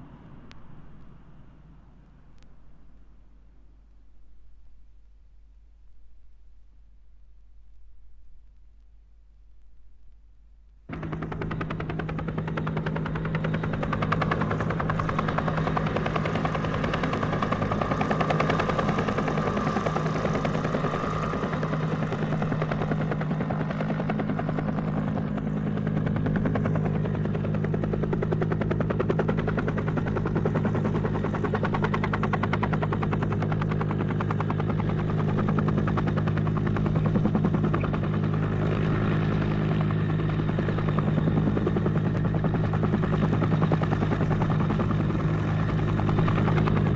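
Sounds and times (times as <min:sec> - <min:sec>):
helicopter rotor chopping: 0:10.9 - 0:46.9.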